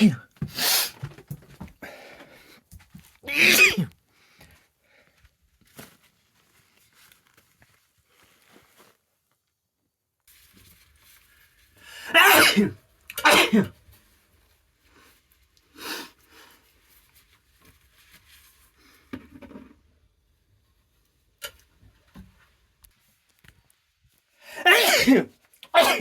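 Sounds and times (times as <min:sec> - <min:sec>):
person sneezing: 0:00.0 - 0:01.1, 0:03.3 - 0:03.9, 0:12.0 - 0:13.7, 0:24.5 - 0:26.0.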